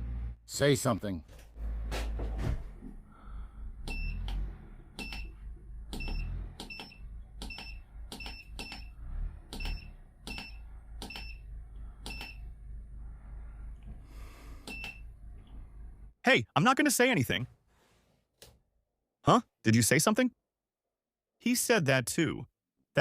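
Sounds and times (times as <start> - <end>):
steady low hum: 1.5 - 16.1
short electronic beeps with clicks: 3.9 - 4.4, 5.0 - 5.3, 6.0 - 8.9, 9.6 - 11.4, 12.1 - 12.4, 14.7 - 15.0.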